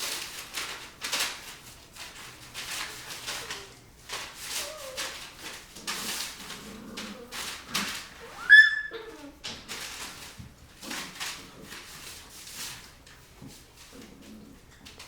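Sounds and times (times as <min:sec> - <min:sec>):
puppies scuffling: 0:00.0 - 0:15.0
puppy whining: 0:04.4 - 0:09.4
puppy yelping: 0:08.3 - 0:09.4.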